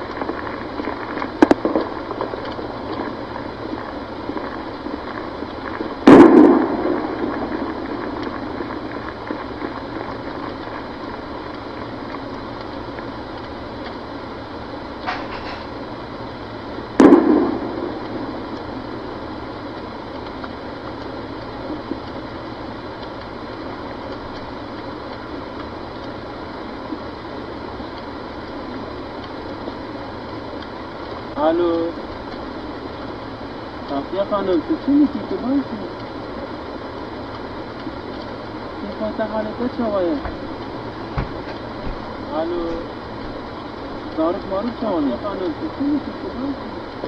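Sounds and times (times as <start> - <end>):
steady background noise: 0.0 - 47.0
loud gunfire booms with echo: 6.0 - 8.2, 17.0 - 18.4
faint gunshot crack: 6.1 - 7.4, 17.0 - 18.3.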